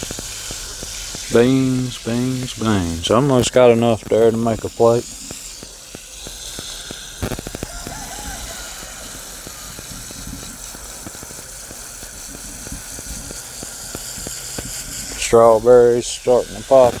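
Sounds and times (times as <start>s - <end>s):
microphone crackling clicks: 0.0s - 8.6s
steady hiss: 0.0s - 17.0s.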